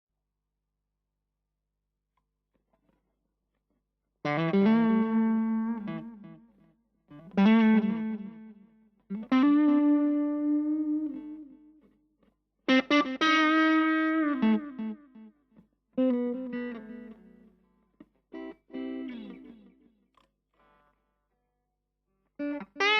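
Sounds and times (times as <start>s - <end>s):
electric guitar chords ringing: 4.3s - 6.4s, 7.2s - 11.6s, 12.7s - 15.0s, 16.0s - 17.5s, 18.4s - 19.7s.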